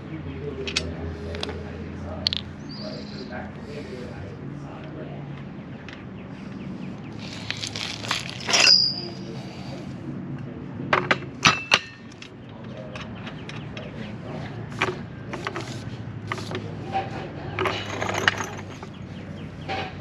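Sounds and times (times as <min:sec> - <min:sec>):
metal objects clicking: 0:02.2 - 0:02.5, 0:17.6 - 0:19.0
metal clatter with high ring: 0:08.4 - 0:09.2, 0:17.6 - 0:19.0.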